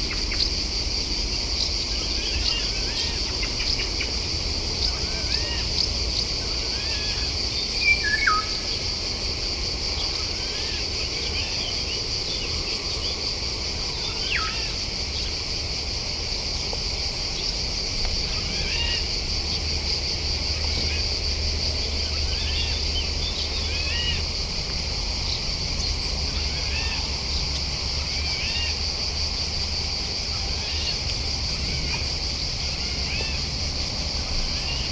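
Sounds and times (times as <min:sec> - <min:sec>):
shrill insect chorus: 0:00.0 - 0:34.9.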